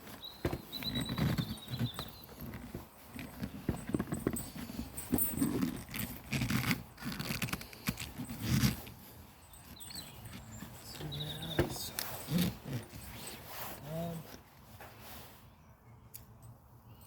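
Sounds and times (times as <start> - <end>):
rubber grip knocking and scraping: 0.0 - 9.0, 9.6 - 13.2.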